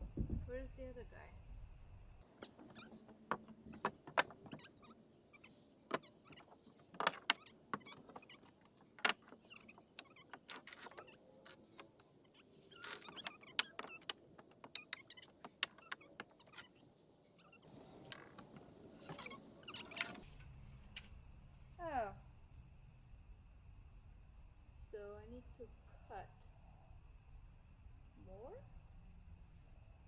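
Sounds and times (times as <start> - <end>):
rustling and scraping: 2.2 - 16.8, 17.4 - 21.2
lumber and tools clicking and knocking: 2.3 - 4.8, 5.8 - 16.8.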